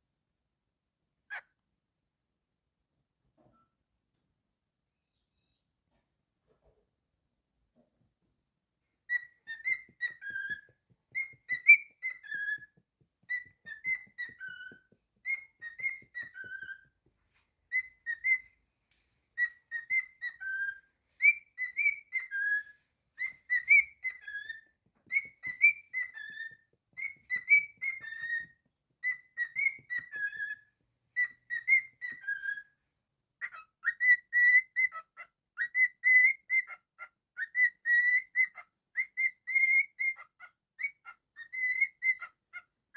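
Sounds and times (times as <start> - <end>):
cockatiel whistling a tune: 9.1 - 17.0, 17.7 - 18.6, 19.4 - 32.8, 33.4 - 42.7.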